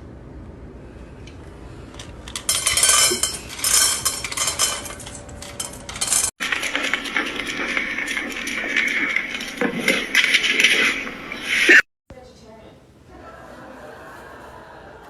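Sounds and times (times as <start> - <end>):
steady noise: 0.0 - 11.9
dishes clattering: 2.3 - 11.8.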